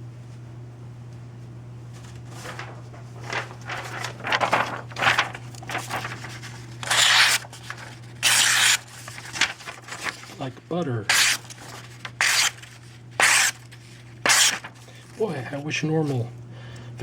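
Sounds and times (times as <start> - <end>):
knife cutting paper: 2.4 - 15.3.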